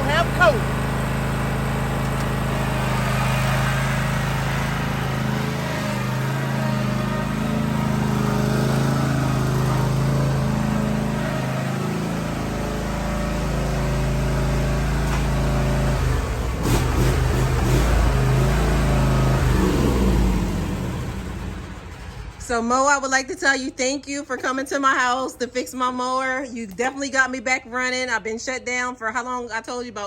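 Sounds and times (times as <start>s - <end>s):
mower engine running: 0.0s - 22.8s.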